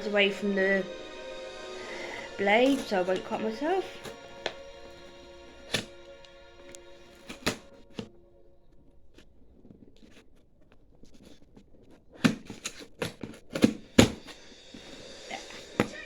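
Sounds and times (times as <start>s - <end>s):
scissors snipping tape: 2.7s - 4.7s, 5.6s - 8.1s, 12.2s - 15.9s.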